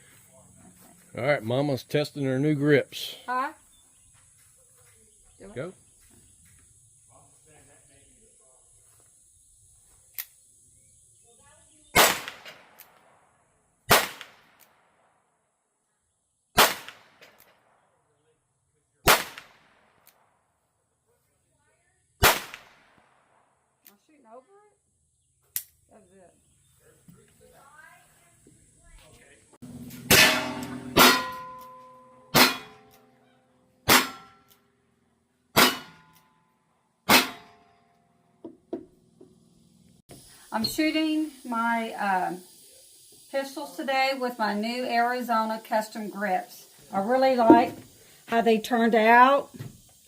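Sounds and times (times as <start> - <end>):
pistol shots with echo: 11.9 - 12.9, 13.9 - 14.7, 16.6 - 17.8, 19.0 - 20.2, 22.2 - 23.4
metallic ringing: 29.7 - 33.2.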